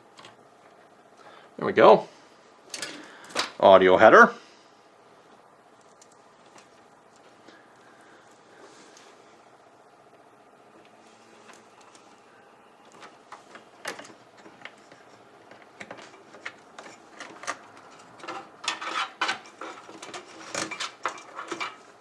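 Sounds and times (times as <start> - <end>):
cable rustling: 5.2 - 22.0.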